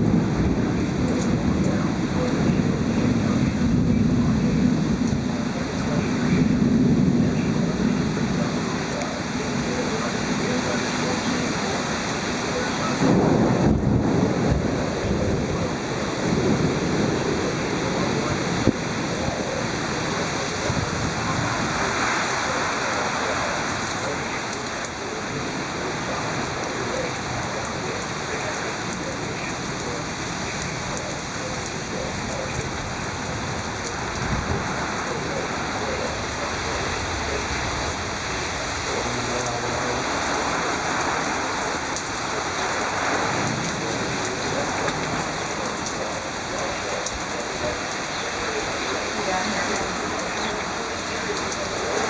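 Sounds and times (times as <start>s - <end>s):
heavy rain pouring: 0.0s - 52.0s
low rumble of thunder: 0.0s - 52.0s.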